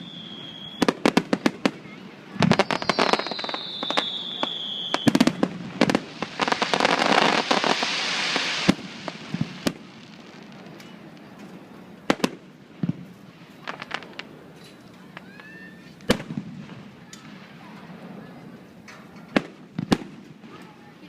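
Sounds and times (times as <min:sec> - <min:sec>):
firework whistle: 0:00.0 - 0:09.2, 0:15.0 - 0:16.4
firework bangs: 0:00.0 - 0:21.0
firework crackling: 0:00.0 - 0:21.0
firework pops: 0:19.2 - 0:20.7.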